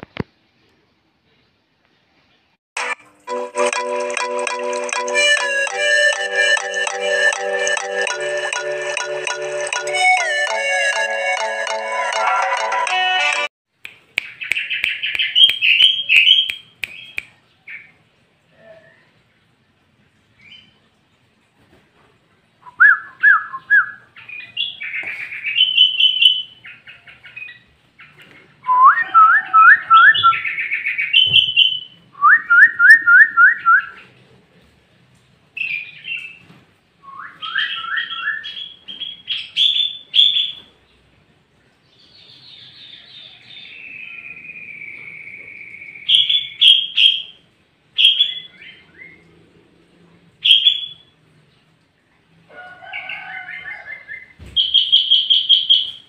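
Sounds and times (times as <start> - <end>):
bird singing whistled notes and trills: 22.6 - 27.7, 28.6 - 34.0, 37.0 - 40.7, 42.0 - 47.4, 48.0 - 49.2, 50.4 - 51.1, 54.1 - 56.0.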